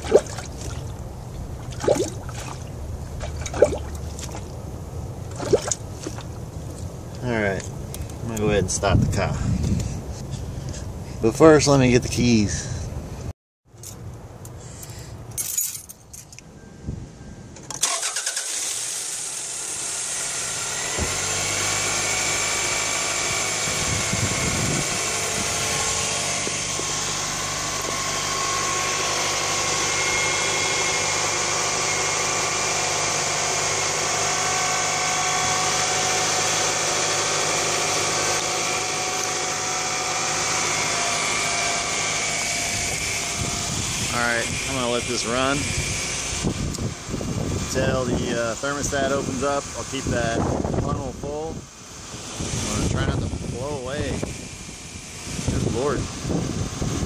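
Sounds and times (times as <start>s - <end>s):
car engine starting and idling: 17.5s - 29.8s.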